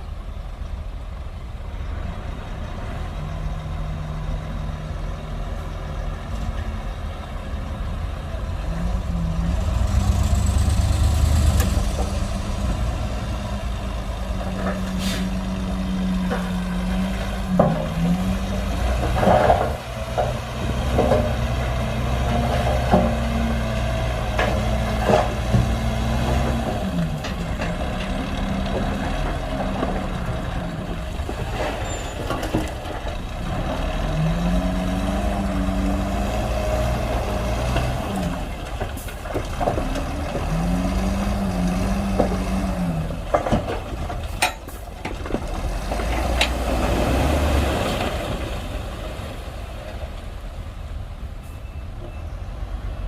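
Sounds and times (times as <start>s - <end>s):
heavy diesel engines running: 0.0s - 53.0s.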